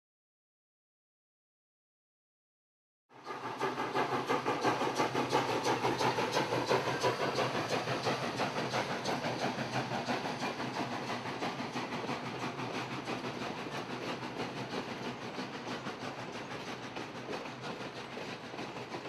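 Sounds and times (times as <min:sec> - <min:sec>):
steam locomotive exhaust beats: 0:03.1 - 0:19.0
steam hissing: 0:03.2 - 0:19.0.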